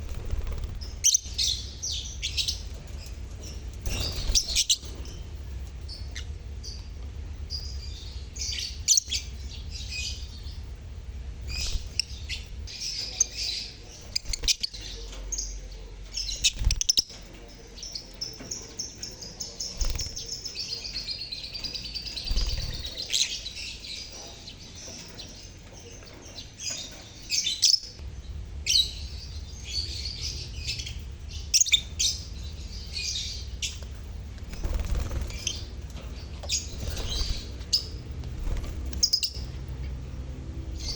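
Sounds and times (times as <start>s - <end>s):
low rumble: 0.0s - 15.1s, 28.0s - 40.9s
lovebirds chirping and chattering: 0.0s - 40.9s.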